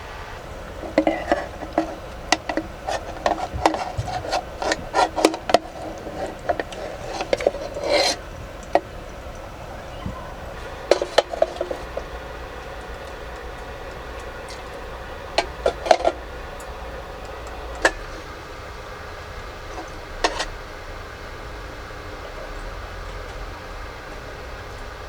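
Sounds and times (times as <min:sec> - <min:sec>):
utensils clinking on dishes: 0:00.8 - 0:18.3, 0:19.7 - 0:20.5.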